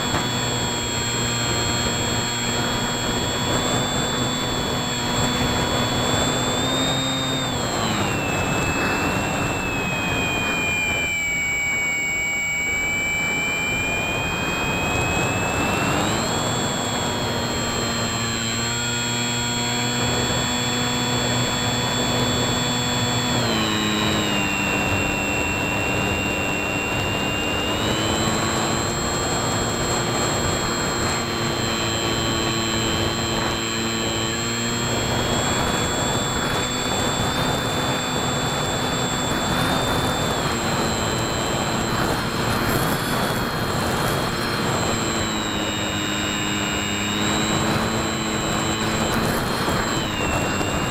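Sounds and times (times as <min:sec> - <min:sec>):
model plane motor whining: 0:00.0 - 0:50.9
steady high-pitched tone: 0:00.0 - 0:50.9
wind rush: 0:00.0 - 0:50.9.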